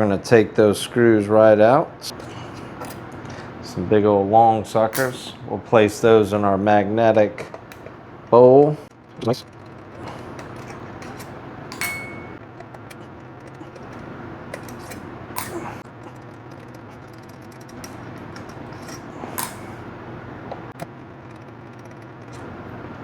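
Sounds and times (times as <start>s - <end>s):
screws clinking into metal bowl: 10.4s - 12.4s.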